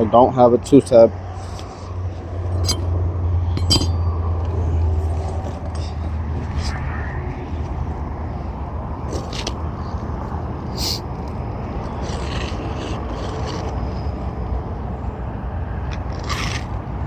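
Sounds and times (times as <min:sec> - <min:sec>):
steady low rumble: 0:00.0 - 0:17.0
roof shingle scraping: 0:09.1 - 0:14.2.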